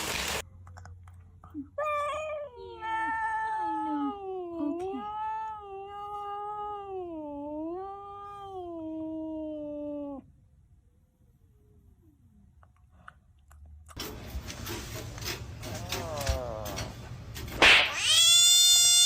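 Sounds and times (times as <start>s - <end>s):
cat yowling: 1.8s - 10.2s.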